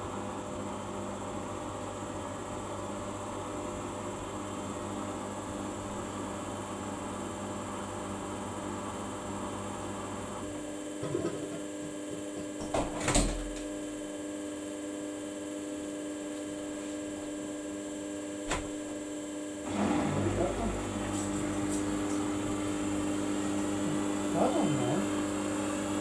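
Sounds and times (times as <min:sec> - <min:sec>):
washing machine running: 0:04.0 - 0:14.2, 0:18.0 - 0:26.0.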